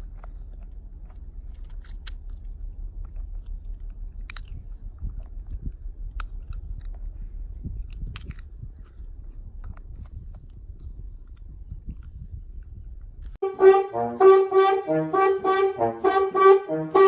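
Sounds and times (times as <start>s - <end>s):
low rumbling background noise: 0.0s - 17.0s
bouncy brass music: 13.4s - 17.0s.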